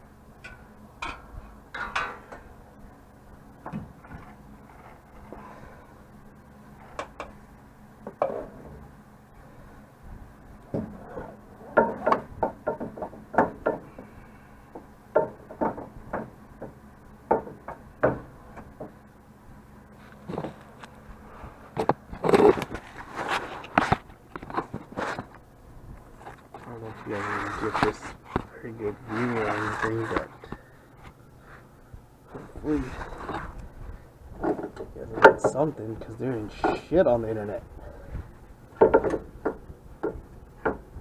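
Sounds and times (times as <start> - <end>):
metal knocks clanks and scrapes: 26.2 - 30.6, 34.4 - 35.7, 36.5 - 37.0.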